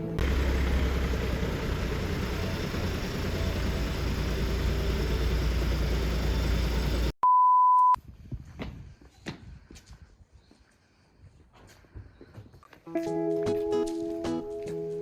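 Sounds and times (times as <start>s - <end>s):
electronic beep: 7.2s - 8.0s.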